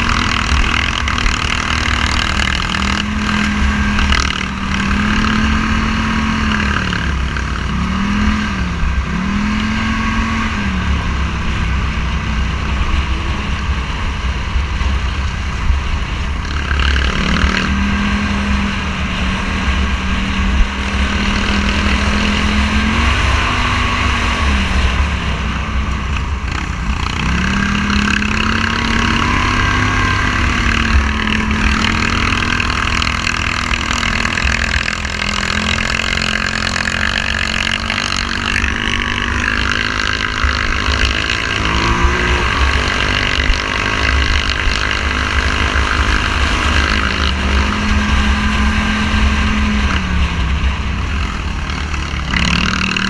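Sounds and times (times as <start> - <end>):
motorcycle engine revving: 0.0 - 53.0.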